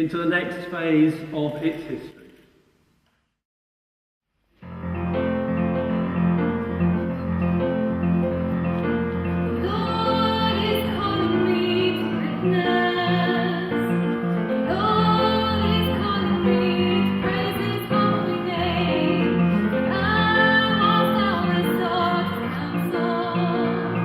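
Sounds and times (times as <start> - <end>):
choir singing: 9.6 - 13.9, 14.7 - 24.0.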